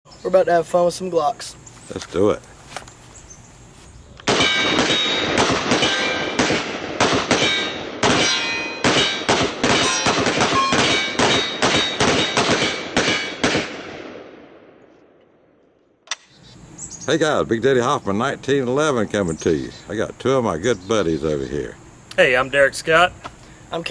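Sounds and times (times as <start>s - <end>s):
rapid pistol fire: 4.3s - 14.6s
steel plates ringing when hit: 4.4s - 6.4s, 7.4s - 13.4s.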